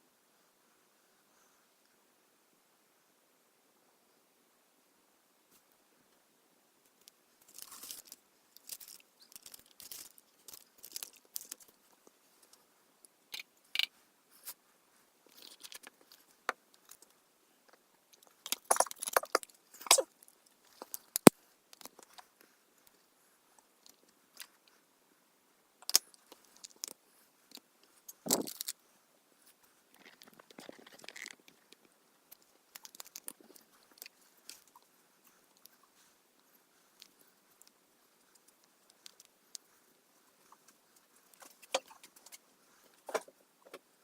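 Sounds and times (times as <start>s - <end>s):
scratching and rustling: 7.4s - 12.7s, 29.4s - 43.8s.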